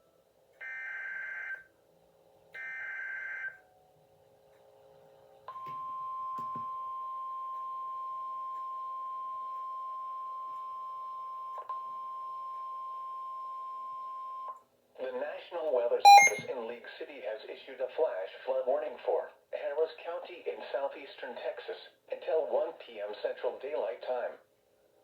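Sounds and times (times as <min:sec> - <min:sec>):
steady warning alarm tone: 0:16.1 - 0:16.4.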